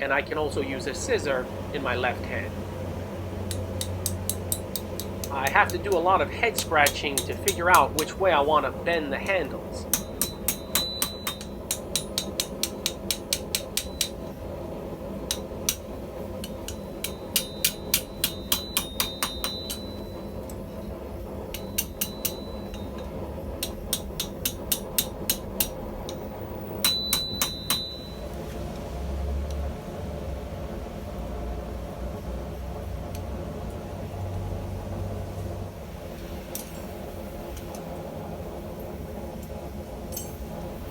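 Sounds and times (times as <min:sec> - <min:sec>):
low steady rumble: 0:00.0 - 0:40.9
hammer striking steel on anvil: 0:03.5 - 0:14.4, 0:15.2 - 0:28.3, 0:40.1 - 0:40.5
anvil ringing: 0:03.8 - 0:14.3, 0:15.3 - 0:20.9, 0:21.5 - 0:28.3, 0:40.1 - 0:40.5.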